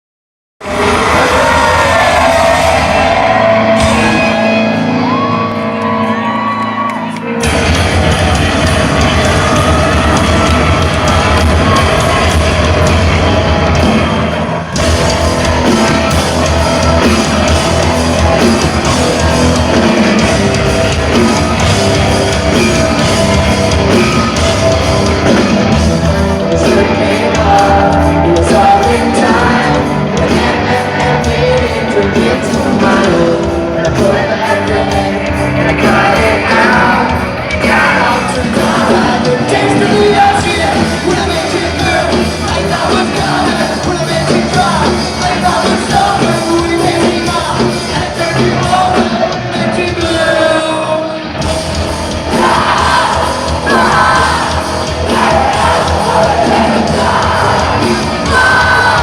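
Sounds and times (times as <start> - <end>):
rock band playing live: 0.6 - 59.0
person singing and yelling: 52.2 - 59.0.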